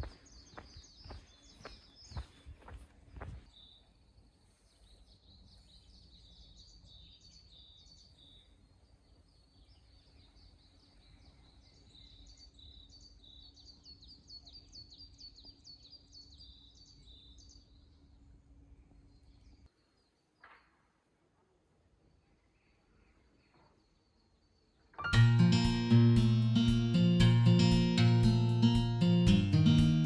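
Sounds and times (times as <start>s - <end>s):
small birds chirping: 0.0s - 20.4s.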